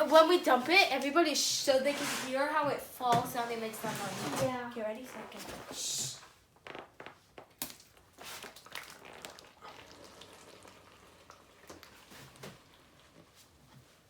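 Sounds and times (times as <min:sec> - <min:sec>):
slime crackling and popping: 0:06.7 - 0:10.0
slime pouring into slime: 0:07.8 - 0:13.2.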